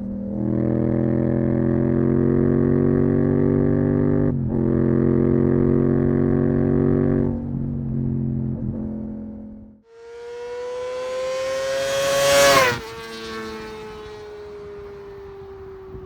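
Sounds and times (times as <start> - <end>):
motorcycle engine revving: 9.9 - 16.0.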